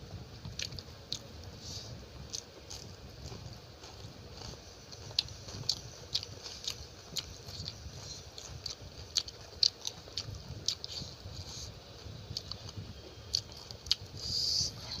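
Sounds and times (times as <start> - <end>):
wet chewing: 2.2 - 15.0.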